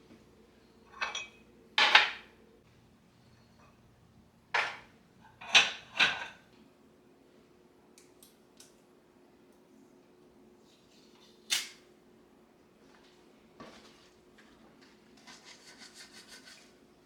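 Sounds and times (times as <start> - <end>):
dishes clattering: 0.9 - 2.3, 4.6 - 6.4.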